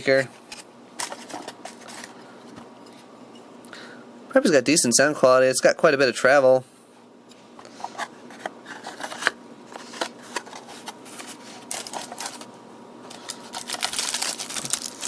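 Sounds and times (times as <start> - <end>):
packaging rustling: 8.7 - 12.5, 13.1 - 15.0.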